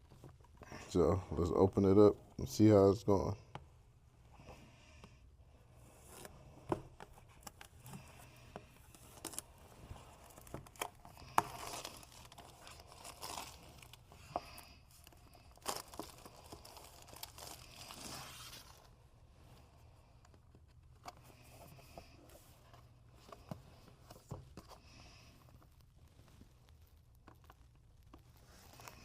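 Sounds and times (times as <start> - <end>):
wrapping tearing and crinkling: 8.8 - 19.0.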